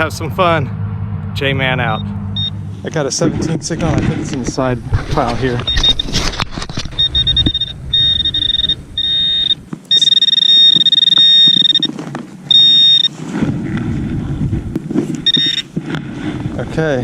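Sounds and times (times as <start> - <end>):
pinpointer high-pitched tone: 1.8 - 2.6, 7.0 - 13.2, 15.2 - 15.7
scraping and rustling of dirt: 3.2 - 7.6, 11.8 - 12.5, 13.1 - 17.0.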